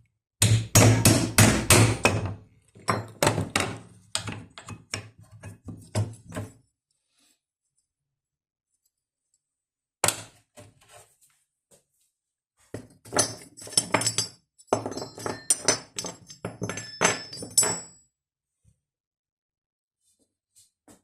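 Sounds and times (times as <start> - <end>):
hard objects knocking and clinking: 2.0 - 6.5, 12.8 - 18.0.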